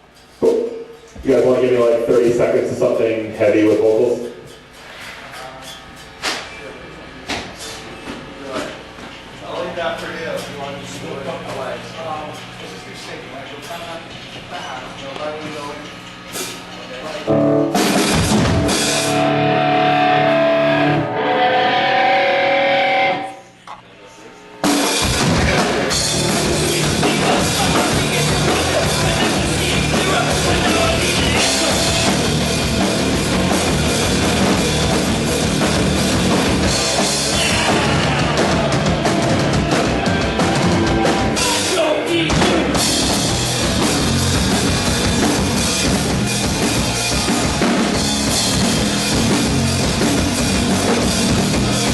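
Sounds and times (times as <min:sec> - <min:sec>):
punk band playing live: 0:00.4 - 0:02.5, 0:17.3 - 0:23.4, 0:24.6 - 0:51.9
held guitar notes: 0:17.3 - 0:23.6.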